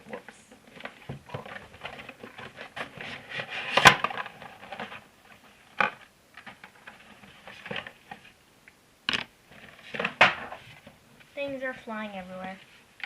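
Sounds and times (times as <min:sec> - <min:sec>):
packaging rubbing and rustling: 0:00.8 - 0:05.5.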